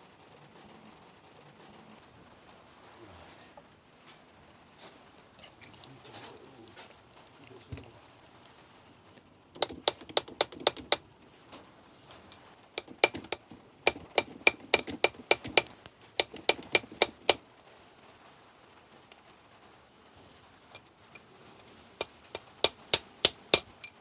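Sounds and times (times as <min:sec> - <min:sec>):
light hammer taps on metal: 0:09.6 - 0:11.0, 0:12.1 - 0:17.4, 0:22.0 - 0:24.0.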